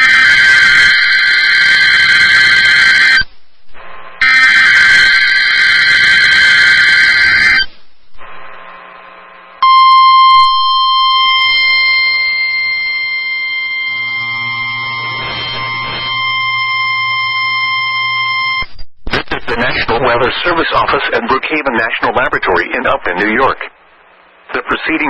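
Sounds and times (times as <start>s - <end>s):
screeching digital data burst: 0.0s - 3.3s, 4.2s - 7.7s, 10.3s - 18.7s
steady warning alarm tone: 0.0s - 8.6s, 9.6s - 18.6s.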